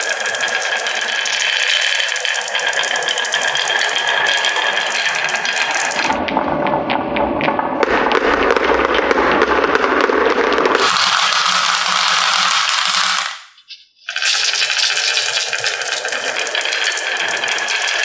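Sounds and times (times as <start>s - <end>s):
marbles clattering down wooden track: 0.0s - 6.2s, 9.9s - 18.0s.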